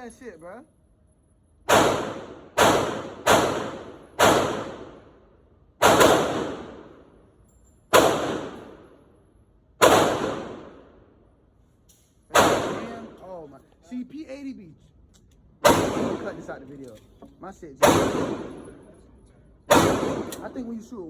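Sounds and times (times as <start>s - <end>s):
pistol shots: 1.7s - 5.2s, 5.8s - 7.1s, 7.9s - 9.0s, 9.8s - 11.0s, 12.3s - 13.2s, 15.6s - 16.6s, 17.8s - 18.8s, 19.7s - 20.8s.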